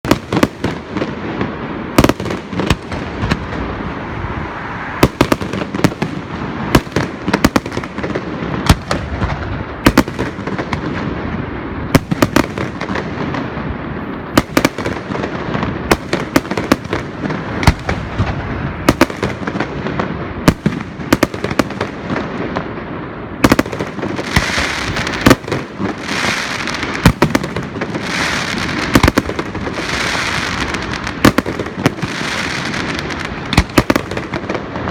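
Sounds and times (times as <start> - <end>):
fireworks launches and bangs: 0.0 - 4.2, 4.9 - 34.9
crackling firework hiss: 0.1 - 34.9.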